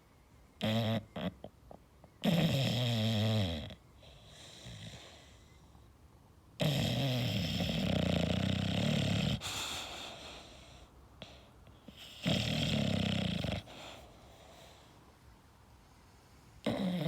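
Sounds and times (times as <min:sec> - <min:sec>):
dog snoring: 0:00.6 - 0:05.5, 0:06.6 - 0:14.8, 0:16.6 - 0:17.0.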